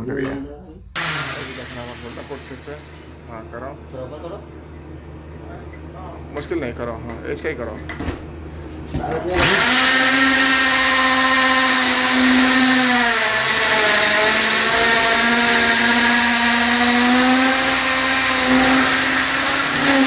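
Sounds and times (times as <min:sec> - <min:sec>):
electric drill boring through wall: 0:01.0 - 0:03.0, 0:09.4 - 0:20.0.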